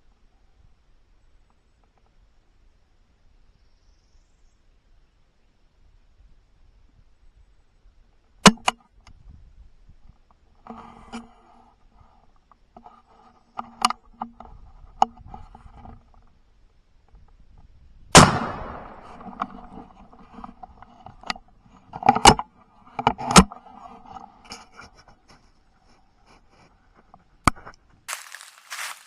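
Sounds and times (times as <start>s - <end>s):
shotgun shot: 18.2s - 19.2s.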